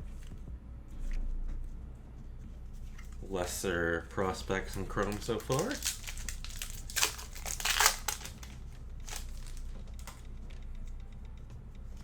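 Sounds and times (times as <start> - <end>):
card pack wrappers crinkling: 3.1 - 10.2.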